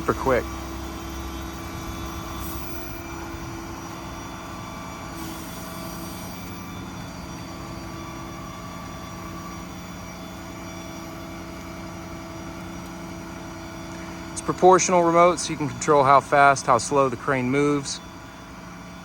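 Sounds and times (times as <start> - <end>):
crane diesel engine hum: 0.0 - 19.0.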